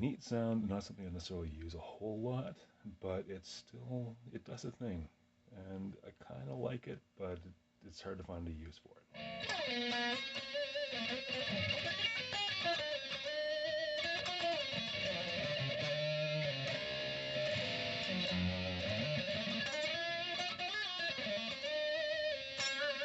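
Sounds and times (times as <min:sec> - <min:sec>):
electric guitar with flanger: 0:09.2 - 0:23.0.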